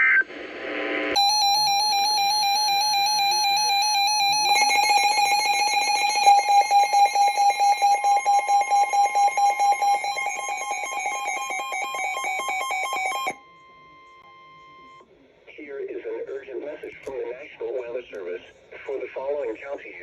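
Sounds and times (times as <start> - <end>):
steady high tone: 1.2 - 14.3
rapid beeping: 1.2 - 14.9.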